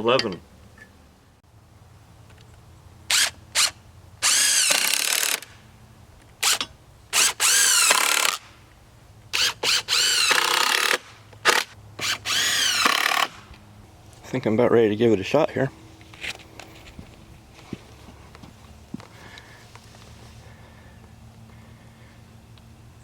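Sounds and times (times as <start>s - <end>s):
electric drill bursts: 3.1s - 5.5s, 6.4s - 8.4s, 9.4s - 13.5s.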